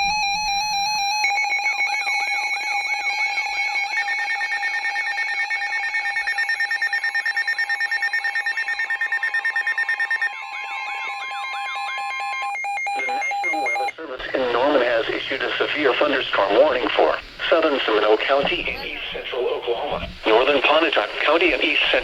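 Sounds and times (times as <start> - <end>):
beeping alarm tones: 0.0 - 16.7
steady warning tone: 0.0 - 22.0
fast pulsing beep: 4.1 - 14.0.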